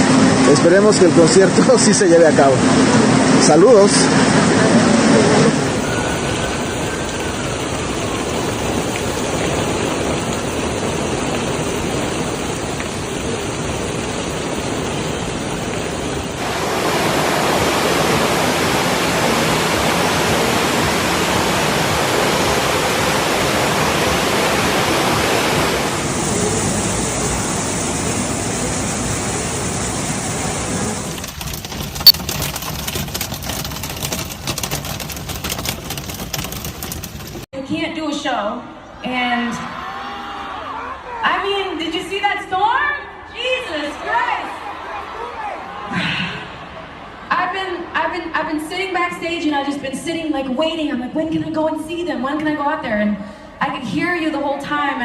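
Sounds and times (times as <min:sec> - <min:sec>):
heavy rain pouring: 0:00.0 - 0:37.5.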